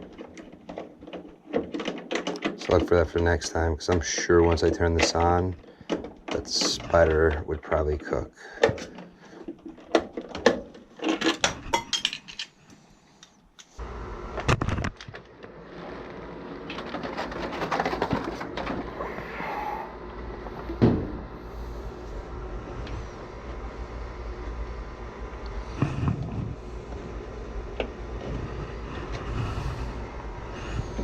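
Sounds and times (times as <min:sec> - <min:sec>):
knocks and rattles: 0:00.0 - 0:12.5, 0:16.7 - 0:19.0
hardware clicking and clinking: 0:03.8 - 0:12.6
steady low hum: 0:17.6 - 0:31.0.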